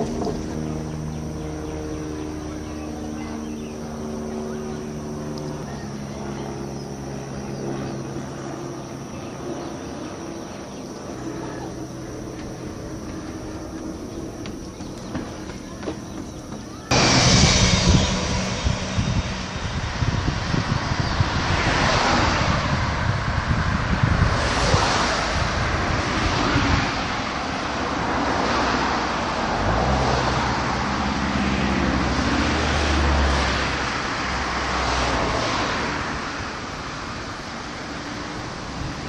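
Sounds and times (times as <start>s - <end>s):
deeper engine drone: 0.0s - 26.9s
road and wind noise: 0.0s - 39.0s.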